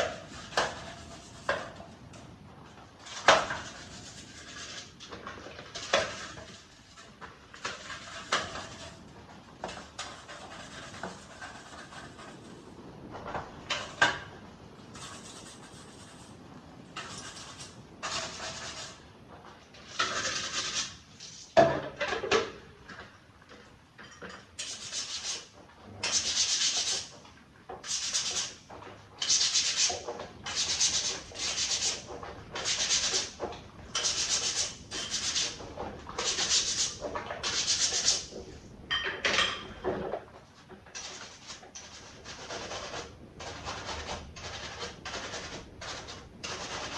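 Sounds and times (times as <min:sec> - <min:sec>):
hand sanding strokes: 0:15.0 - 0:16.3, 0:20.1 - 0:20.9, 0:24.6 - 0:27.1, 0:27.8 - 0:28.6, 0:29.2 - 0:33.4, 0:34.0 - 0:35.6, 0:36.2 - 0:38.3.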